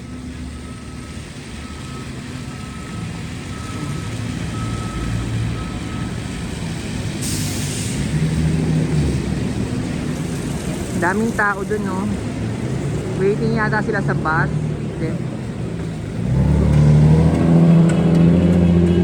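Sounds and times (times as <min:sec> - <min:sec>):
city street traffic: 0:00.0 - 0:19.0
heavy vehicle engine running: 0:00.0 - 0:19.0
faint broken beeping tone: 0:01.6 - 0:06.1
air brake hiss: 0:07.2 - 0:08.1.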